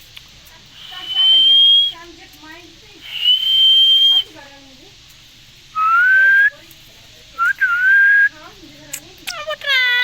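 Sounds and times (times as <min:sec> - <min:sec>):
faint soft chatter: 0:00.0 - 0:10.0
parrot whistling: 0:00.8 - 0:02.0, 0:03.0 - 0:04.3, 0:05.8 - 0:06.5, 0:07.4 - 0:08.3.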